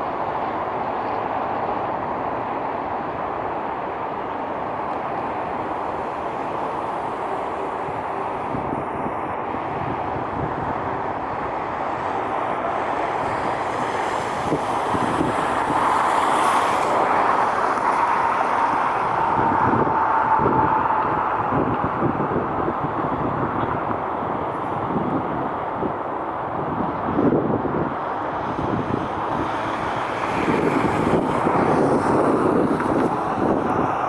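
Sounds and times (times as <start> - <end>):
jet engines rumbling: 0.0 - 34.0
high whine: 16.8 - 25.2.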